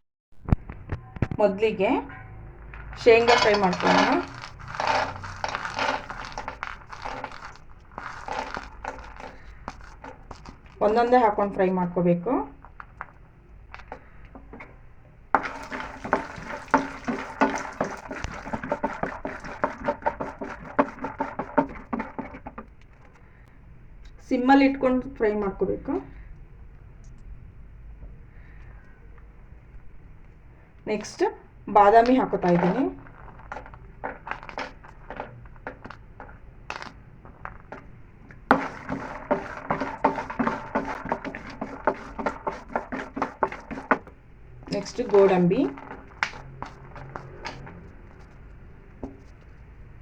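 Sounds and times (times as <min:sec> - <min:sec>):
clicks and crackles: 0:02.6 - 0:10.9, 0:12.6 - 0:14.7, 0:32.0 - 0:48.5
peanuts frying in oil: 0:02.7 - 0:14.5, 0:15.3 - 0:22.7, 0:31.0 - 0:48.4.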